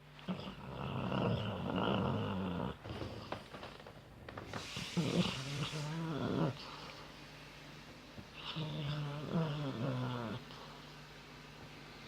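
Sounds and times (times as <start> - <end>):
dog snoring: 0.2 - 3.5, 4.6 - 7.0, 8.4 - 10.8.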